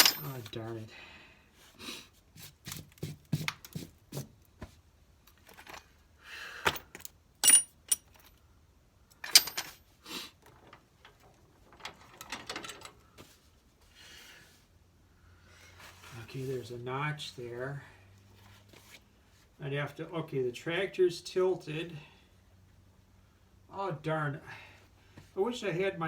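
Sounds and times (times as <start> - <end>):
metal parts and tools clanking: 0.0 - 0.6, 6.7 - 8.4, 9.2 - 9.8, 10.6 - 13.0.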